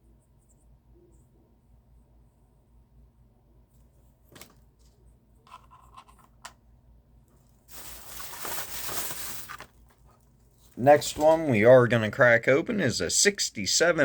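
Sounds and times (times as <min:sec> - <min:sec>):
plastic and card rustling: 0:07.3 - 0:11.6.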